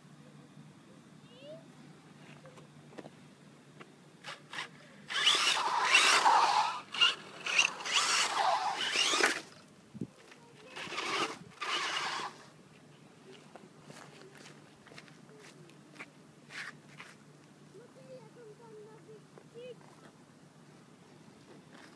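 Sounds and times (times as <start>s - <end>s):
electric toy car motor whining: 4.2s - 9.6s, 10.7s - 12.5s
tyres spinning on tarmac: 5.1s - 9.6s.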